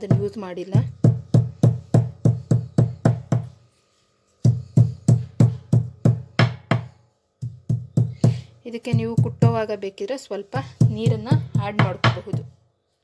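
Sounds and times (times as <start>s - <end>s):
pestle pounding in a mortar: 0.0s - 3.6s, 4.4s - 9.7s, 10.6s - 12.6s.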